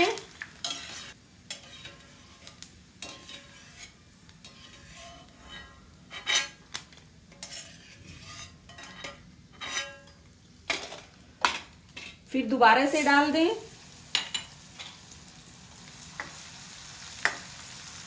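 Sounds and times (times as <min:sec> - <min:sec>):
faint sizzle of oil: 0:00.0 - 0:18.0
metal spoon scraping a pan: 0:00.6 - 0:11.0, 0:11.9 - 0:12.2.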